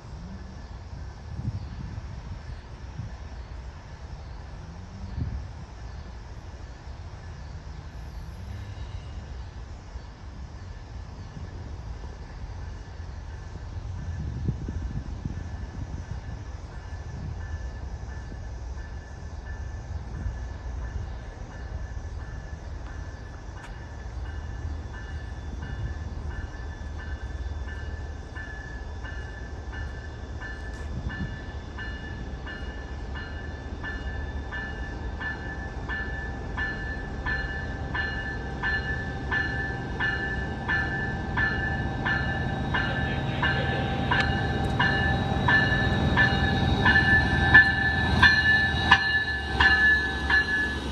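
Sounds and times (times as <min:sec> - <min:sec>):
train rumble: 0:00.0 - 0:50.9
train bell ringing: 0:07.8 - 0:09.4, 0:16.8 - 0:50.9.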